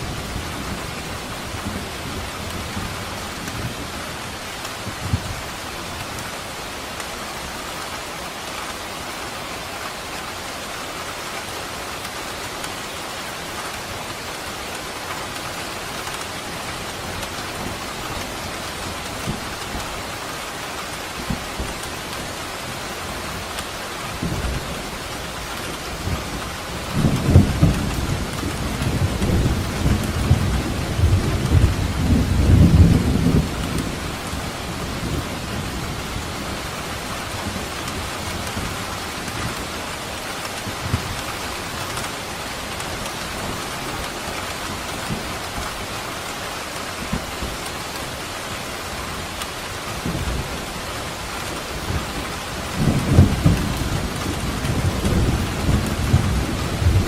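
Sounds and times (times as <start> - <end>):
heavy rain falling: 0.0 - 57.0
thunder rumbling: 25.7 - 39.6, 50.0 - 57.0.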